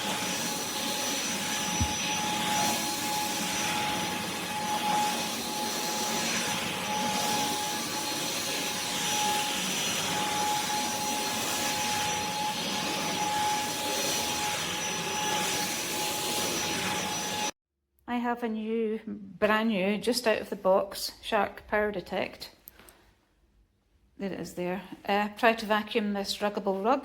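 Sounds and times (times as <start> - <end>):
vacuum cleaner running: 0.0 - 17.6.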